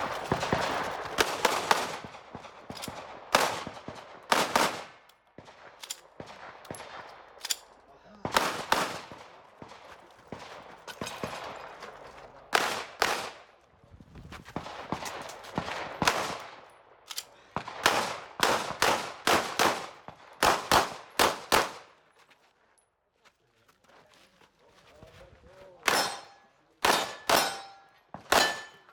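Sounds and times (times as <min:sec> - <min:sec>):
pistol gunshots: 0:00.0 - 0:11.8, 0:12.5 - 0:13.5, 0:14.6 - 0:16.6, 0:17.4 - 0:21.9, 0:25.9 - 0:28.9.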